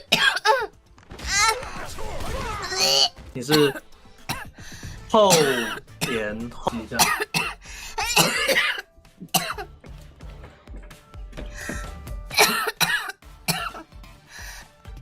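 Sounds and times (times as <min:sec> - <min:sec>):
girl coughing: 0:00.0 - 0:00.7, 0:02.7 - 0:04.5, 0:05.3 - 0:09.7, 0:12.3 - 0:13.8.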